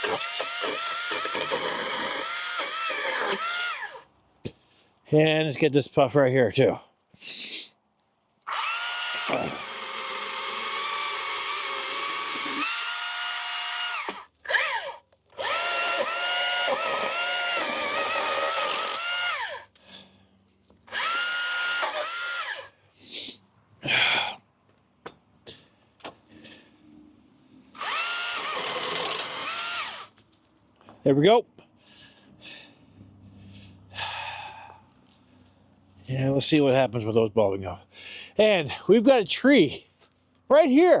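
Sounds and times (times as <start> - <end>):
pole saw motor whine: 0.0 - 4.0, 8.5 - 19.6, 20.9 - 22.7, 27.8 - 30.1.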